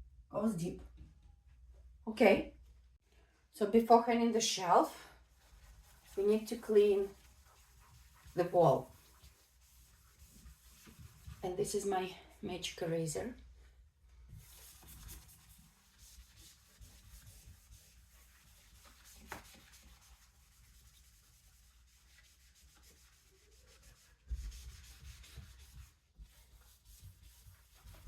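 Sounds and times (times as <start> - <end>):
sponge scrubbing a wall: 5.2 - 11.9, 13.6 - 28.0.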